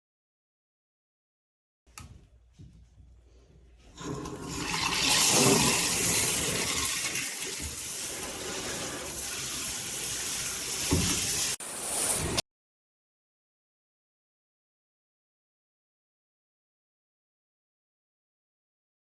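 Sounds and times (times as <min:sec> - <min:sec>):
water rushing from hose: 0:04.5 - 0:12.4.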